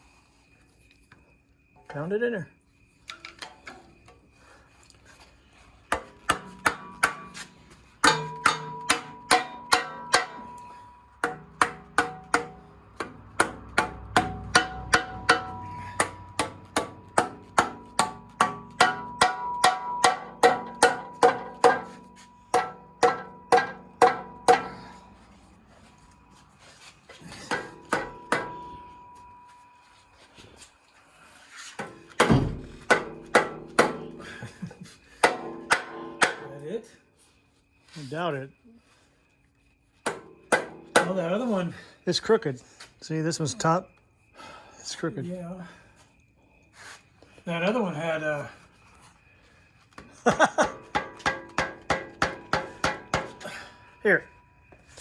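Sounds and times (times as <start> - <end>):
hammer striking metal: 5.9 - 25.1, 27.4 - 29.6, 31.8 - 34.2, 35.2 - 36.5, 40.0 - 41.2, 50.9 - 53.4.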